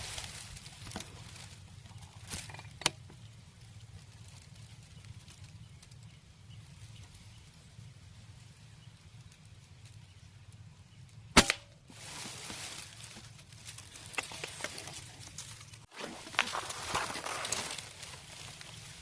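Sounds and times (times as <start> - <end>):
rustling: 0.0 - 2.9, 11.8 - 19.0
airgun shot: 11.4 - 11.7.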